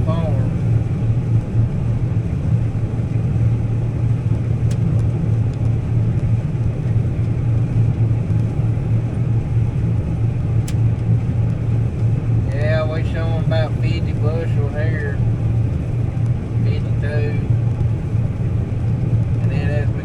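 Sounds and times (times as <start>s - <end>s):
combine harvester drone: 0.0s - 20.0s
light clicks: 10.6s - 12.1s.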